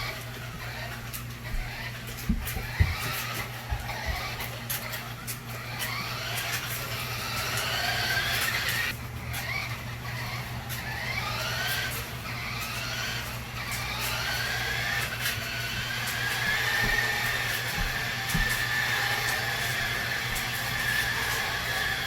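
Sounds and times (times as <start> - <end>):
toy car motor whining: 0.0 - 22.0.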